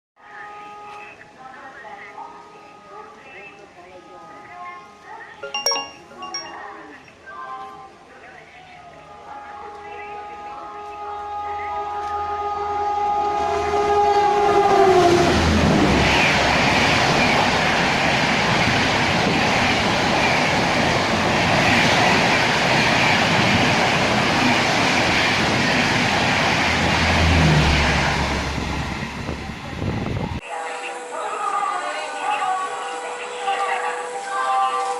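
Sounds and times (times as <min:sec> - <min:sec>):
train horn: 0:00.2 - 0:01.4, 0:09.0 - 0:15.6.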